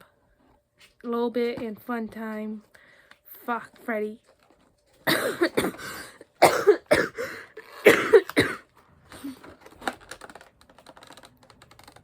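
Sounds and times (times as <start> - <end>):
person coughing: 5.0 - 9.4
plastic packaging crinkling: 9.2 - 12.0.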